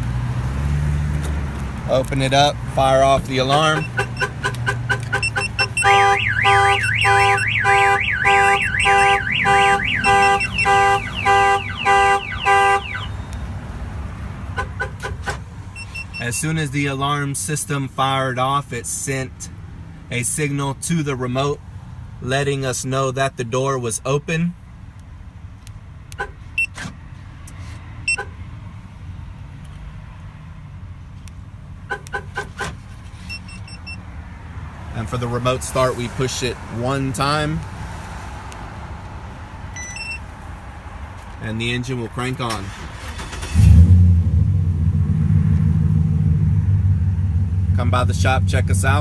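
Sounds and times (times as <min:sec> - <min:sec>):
truck horn honking in pulses: 0:03.4 - 0:13.4, 0:14.5 - 0:15.4
car alarm warbling siren: 0:03.5 - 0:13.4
high electronic beeps: 0:03.7 - 0:13.3, 0:15.8 - 0:16.2, 0:39.8 - 0:40.2
steady low rumble: 0:43.8 - 0:49.0.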